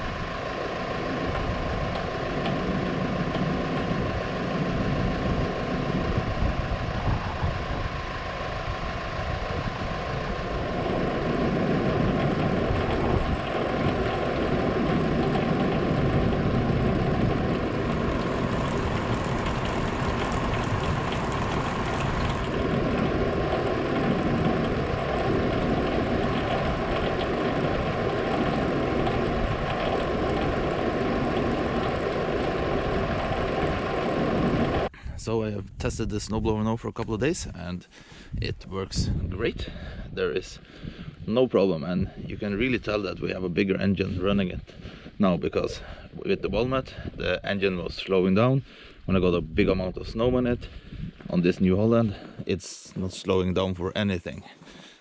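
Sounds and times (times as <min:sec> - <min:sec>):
tractor engine running: 0:00.0 - 0:35.2.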